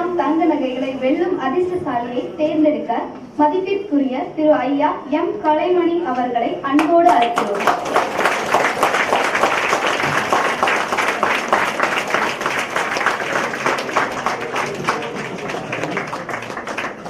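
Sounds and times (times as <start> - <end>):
audience applauding: 6.8 - 17.0.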